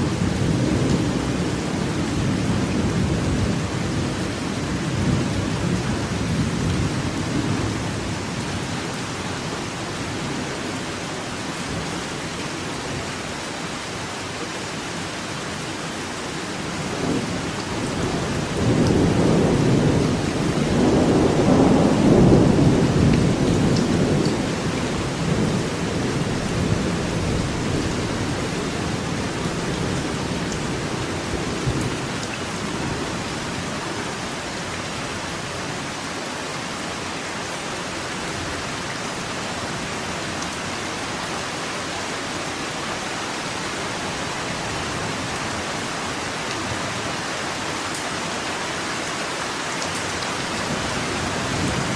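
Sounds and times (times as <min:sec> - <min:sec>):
steady rain falling: 0:00.0 - 0:51.9
low roll of thunder: 0:17.0 - 0:29.2.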